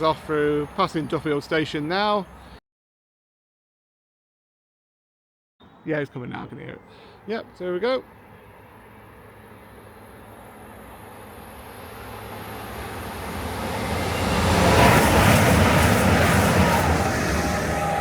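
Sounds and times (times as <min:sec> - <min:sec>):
train passing: 0:07.3 - 0:18.0
train engine tone: 0:08.0 - 0:18.0.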